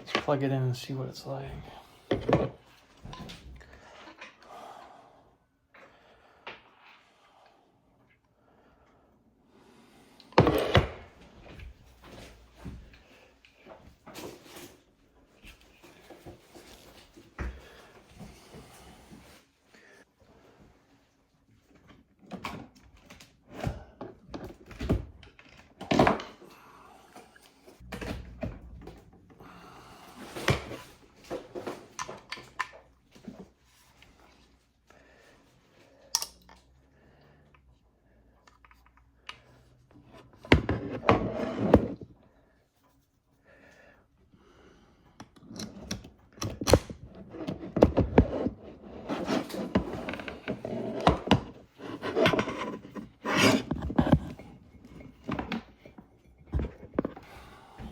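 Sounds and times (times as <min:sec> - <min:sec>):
cables and gear being handled: 0:45.2 - 0:57.9.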